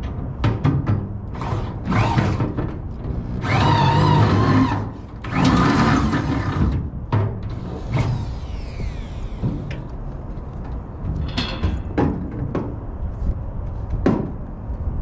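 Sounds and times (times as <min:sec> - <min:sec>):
power drill boring through metal: 0:01.4 - 0:06.8, 0:07.5 - 0:09.8.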